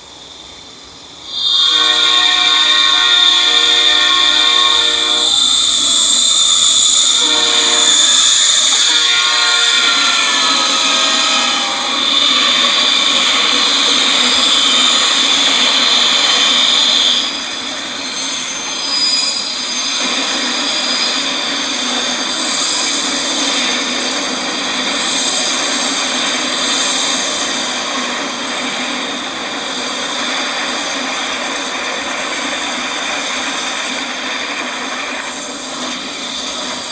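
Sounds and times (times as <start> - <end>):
dull noisy roar: 0.0 - 36.9
steady hiss with high screech: 0.0 - 36.9
train horn: 1.3 - 22.6.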